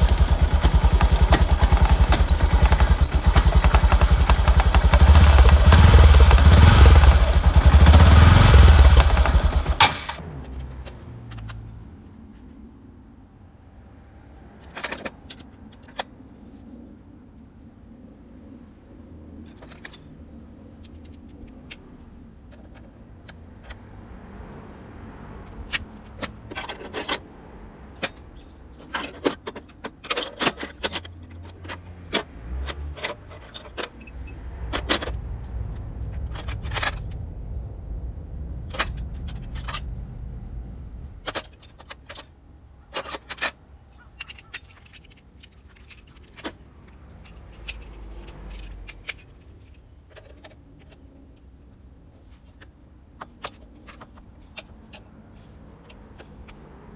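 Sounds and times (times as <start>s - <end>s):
metal tools clinking: 22.5s - 23.9s, 43.0s - 51.0s
low rumble: 34.3s - 41.4s.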